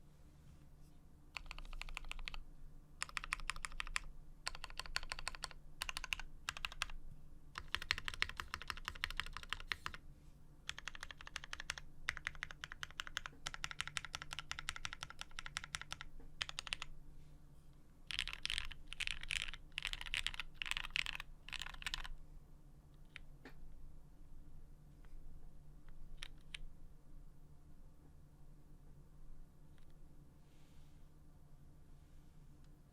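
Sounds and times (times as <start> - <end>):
mechanical keyboard typing: 1.3 - 2.4, 3.0 - 7.0, 7.6 - 10.0, 10.7 - 16.9, 18.1 - 22.1, 26.2 - 26.6.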